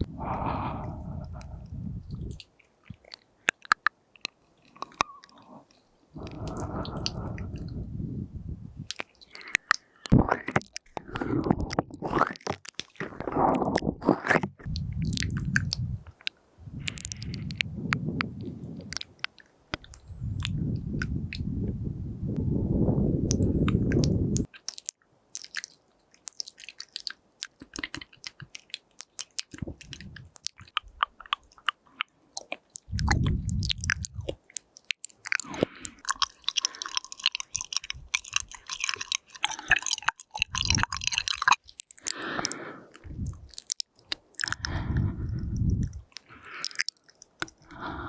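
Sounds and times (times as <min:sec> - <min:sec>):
wet mouth clicks and pops: 0:00.0 - 0:21.8, 0:23.2 - 0:48.0.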